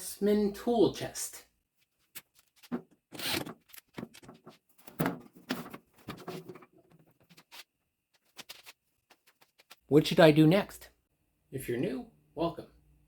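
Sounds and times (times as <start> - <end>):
tool chest knocks and rattles: 2.7 - 6.9.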